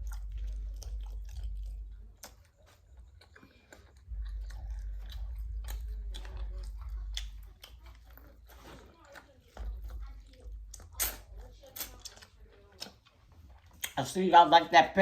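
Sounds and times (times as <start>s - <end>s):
low rumble: 0.0s - 2.3s, 4.0s - 8.4s
close-miked chewing and biting: 0.0s - 14.3s.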